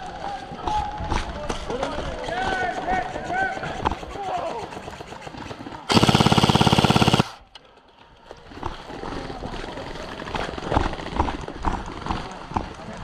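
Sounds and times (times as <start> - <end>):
airsoft gun full-auto burst: 5.9 - 7.4.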